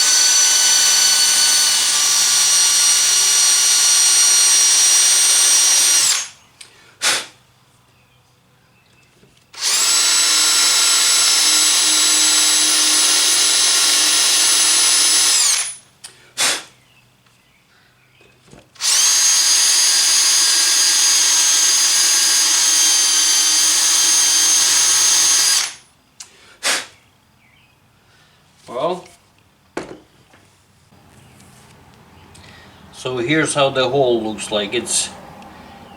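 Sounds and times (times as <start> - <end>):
power drill whining: 0.0 - 6.4, 9.6 - 15.8, 18.8 - 25.8.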